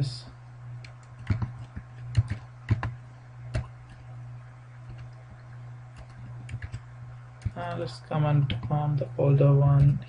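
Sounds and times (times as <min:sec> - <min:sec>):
low electrical hum: 0:00.0 - 0:10.0
keyboard and mouse clicks: 0:00.8 - 0:04.1, 0:04.8 - 0:06.8.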